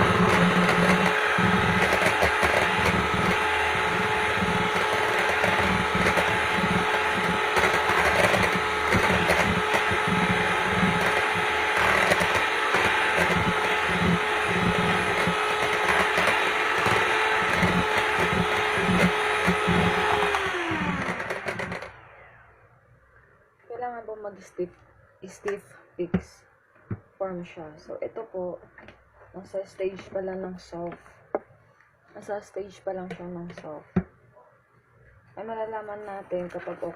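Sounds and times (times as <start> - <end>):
electric hand mixer whisking: 0.0 - 22.4.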